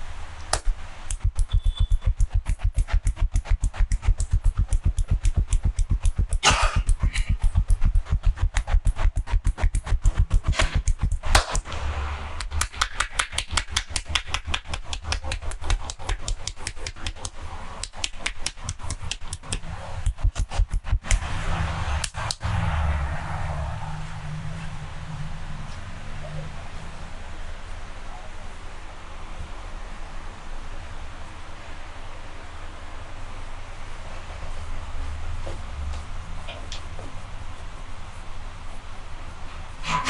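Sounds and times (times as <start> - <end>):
hands slapping body: 2.0 - 11.7, 12.4 - 21.3
sharp hand claps: 10.8 - 11.7, 12.4 - 20.2.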